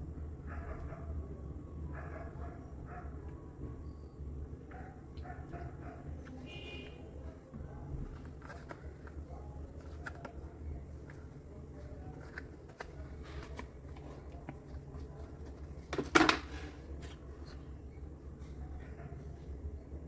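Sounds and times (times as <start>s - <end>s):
mechanical keyboard clatter: 15.8s - 16.7s.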